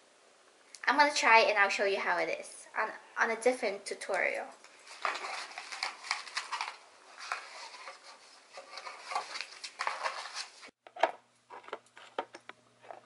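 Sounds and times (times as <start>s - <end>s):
faint electrical hum: 0.0s - 13.0s
packaging rustling: 4.8s - 10.8s.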